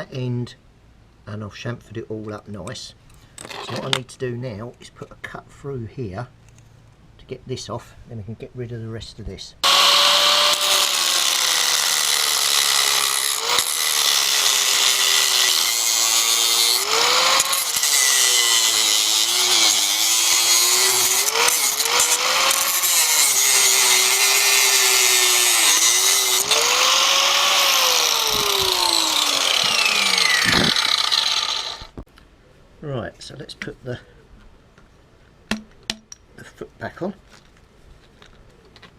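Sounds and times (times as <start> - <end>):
angle grinder cutting metal: 9.6 - 32.0.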